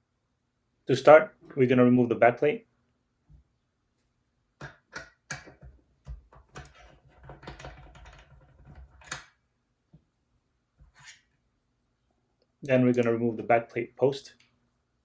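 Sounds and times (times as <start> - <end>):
clicks and knocks of tool and parts: 4.6 - 9.4.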